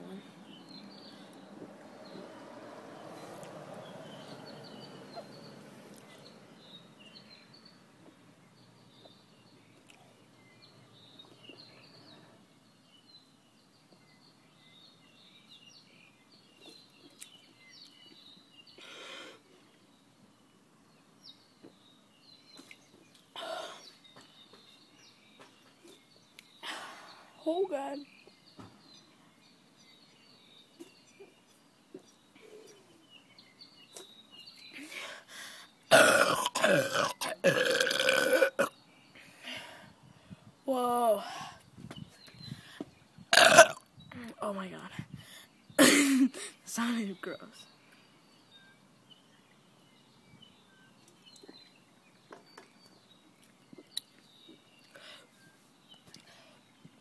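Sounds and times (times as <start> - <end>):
faint birds chirping: 0.0 - 57.0
person burping: 35.9 - 38.7, 43.3 - 43.8.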